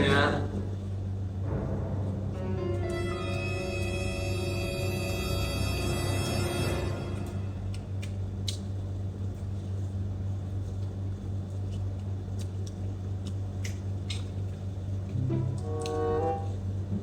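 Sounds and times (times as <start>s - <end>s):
steady low hum: 0.0s - 17.0s
music: 1.4s - 7.8s, 15.1s - 17.0s
small clicks and smacks: 7.7s - 8.8s, 10.7s - 15.2s
chewing chicken: 7.7s - 16.0s.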